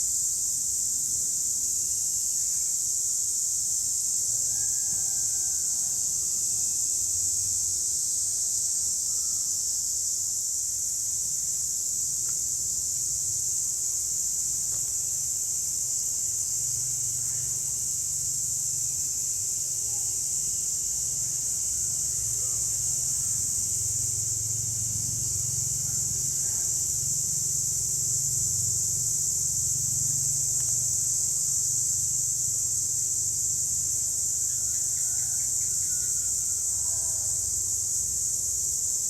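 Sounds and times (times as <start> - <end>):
cicadas droning: 0.0 - 39.0.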